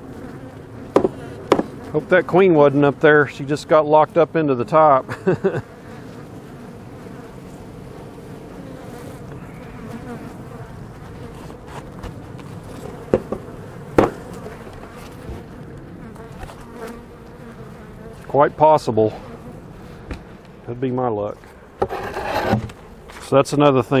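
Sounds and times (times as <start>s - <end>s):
honey bees buzzing: 0.0s - 24.0s
sharp knocks: 1.0s - 1.7s, 13.1s - 14.2s.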